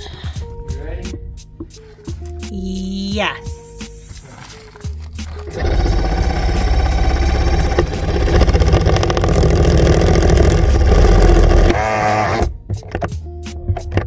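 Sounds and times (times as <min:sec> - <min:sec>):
power drill boring plastic: 0:04.4 - 0:12.4.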